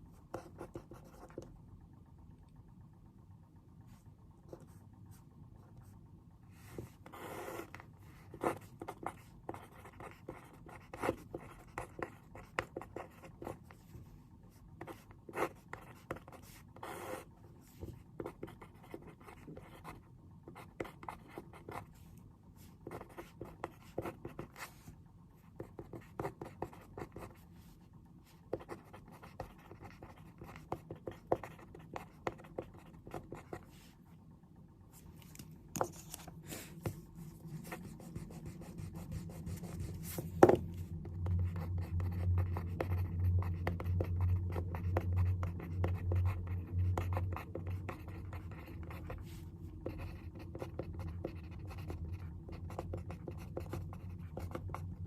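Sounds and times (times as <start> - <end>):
low steady hum: 0.0 - 55.0
pen scratching on paper: 0.3 - 1.4, 6.7 - 13.8, 14.8 - 17.3, 17.9 - 21.9, 22.8 - 24.8, 25.5 - 27.4, 28.5 - 33.7, 37.6 - 40.6, 41.5 - 54.8.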